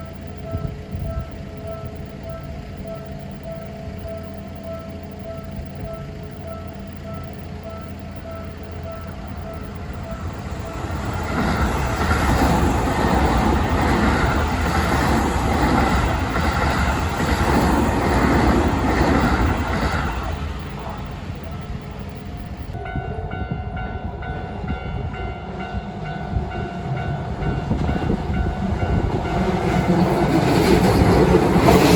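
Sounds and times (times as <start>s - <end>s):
crossing warning bell dinging: 0.0s - 31.9s
train wheels clattering: 27.7s - 31.9s.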